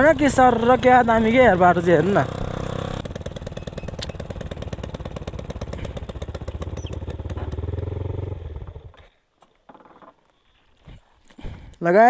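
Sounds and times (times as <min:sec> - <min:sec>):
motorcycle engine running: 0:00.0 - 0:09.1.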